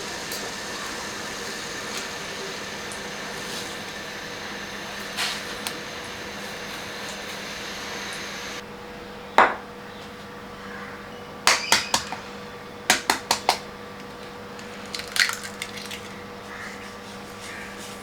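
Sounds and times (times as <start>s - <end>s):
steady hum: 0.0s - 8.6s.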